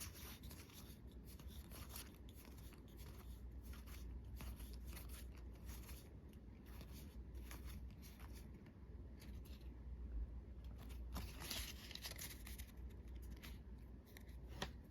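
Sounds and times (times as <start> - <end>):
cards scraping and rustling: 0.0 - 9.8, 10.7 - 14.9.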